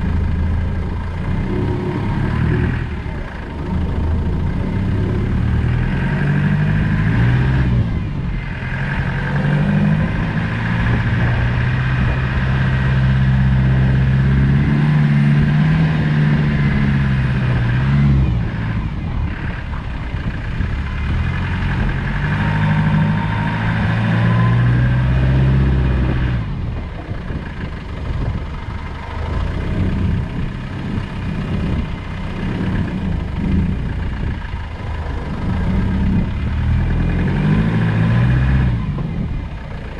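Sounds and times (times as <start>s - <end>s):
diesel engine revving: 0.0s - 39.9s.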